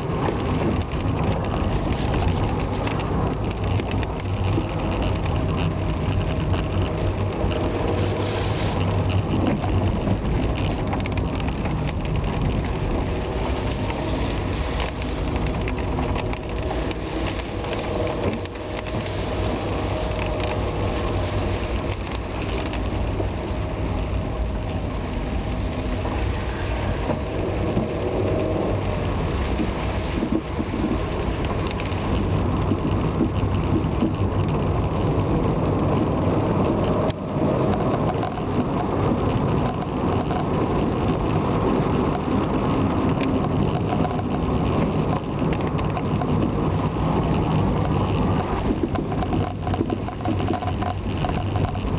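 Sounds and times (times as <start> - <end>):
low engine rumble: 0.0 - 51.9
rain and wet road noise: 0.0 - 51.9.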